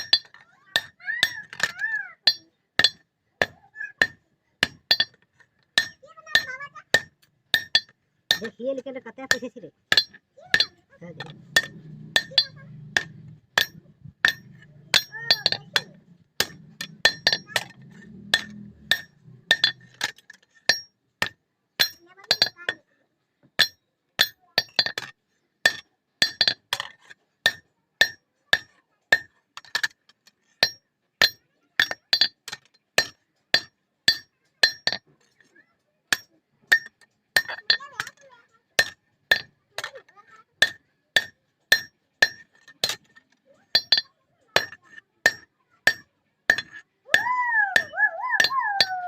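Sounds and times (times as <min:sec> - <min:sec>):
hammer striking steel on anvil: 0:09.3 - 0:19.9, 0:40.6 - 0:43.1, 0:43.8 - 0:49.0.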